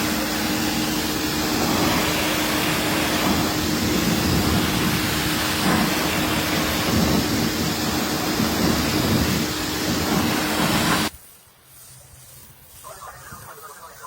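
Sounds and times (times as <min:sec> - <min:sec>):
pressure washer running: 0:00.0 - 0:11.1
spray hiss: 0:00.0 - 0:14.0.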